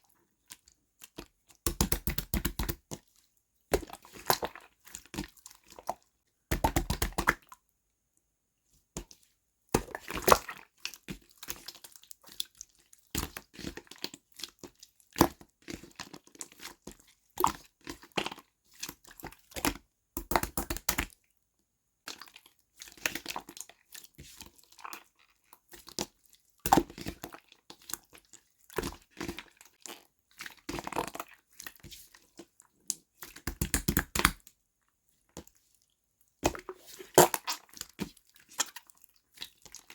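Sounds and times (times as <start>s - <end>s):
slime squished by hand: 36.4s - 39.8s.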